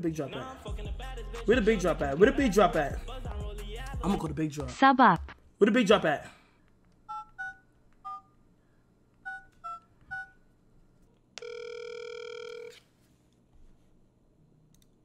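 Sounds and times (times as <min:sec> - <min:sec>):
phone keypad beeps: 0:07.1 - 0:08.3, 0:09.2 - 0:10.4, 0:11.4 - 0:12.8.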